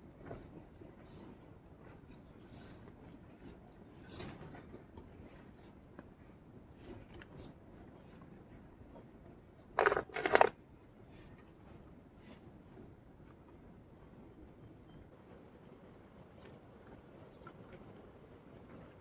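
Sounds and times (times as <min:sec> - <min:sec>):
faint scratching and rubbing: 0:00.2 - 0:05.8, 0:09.8 - 0:14.7.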